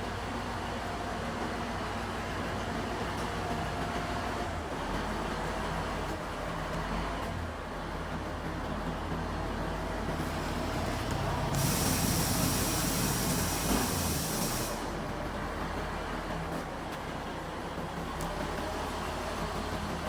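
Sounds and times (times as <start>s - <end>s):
loud hiss: 11.5s - 15.0s.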